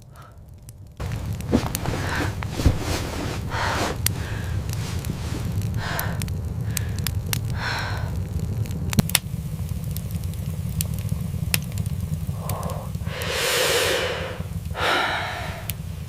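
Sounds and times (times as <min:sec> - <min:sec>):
person breathing: 0:00.0 - 0:08.3, 0:12.3 - 0:16.0
steady low rumble: 0:00.0 - 0:16.0
sharp crackles: 0:00.1 - 0:16.0.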